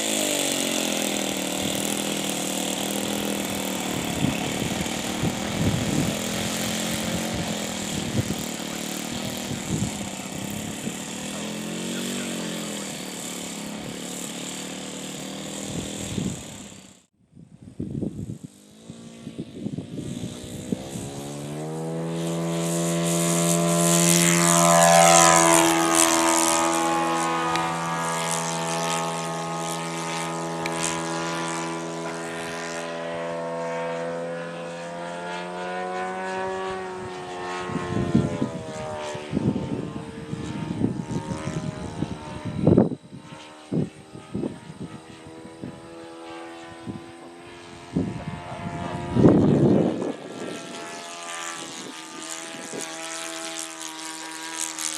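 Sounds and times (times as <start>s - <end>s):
model airplane engine droning: 0.0s - 54.9s.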